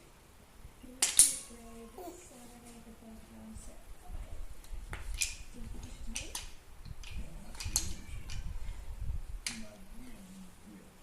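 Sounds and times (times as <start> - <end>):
muffled cat meowing: 7.8 - 8.8.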